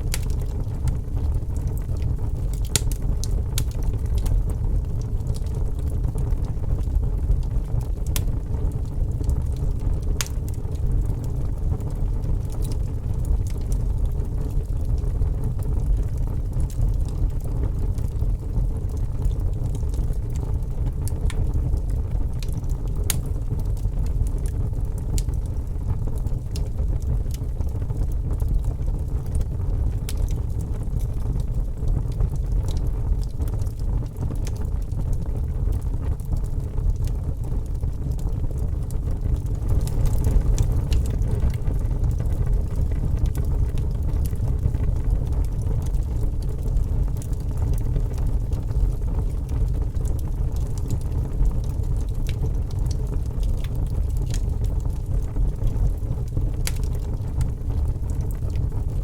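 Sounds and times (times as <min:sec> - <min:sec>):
fire crackling and popping: 0:00.0 - 0:59.0
low rumble: 0:21.0 - 0:51.2.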